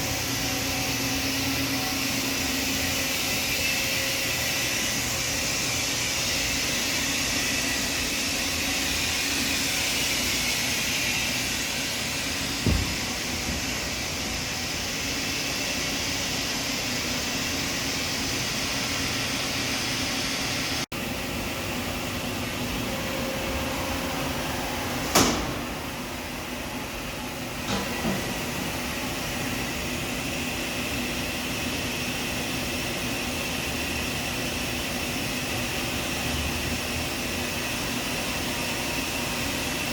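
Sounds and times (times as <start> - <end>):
machine shop hiss and hum: 0.0 - 39.9
sharp knocks: 12.6 - 13.7.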